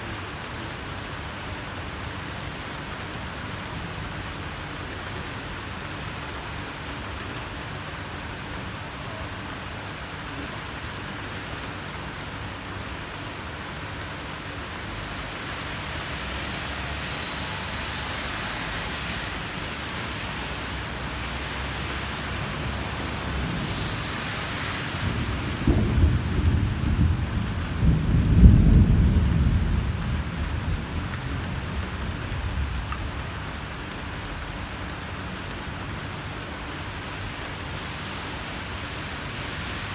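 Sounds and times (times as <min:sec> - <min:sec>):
heavy rain falling: 0:00.0 - 0:39.9
thunder cracking and rumbling: 0:24.8 - 0:33.2.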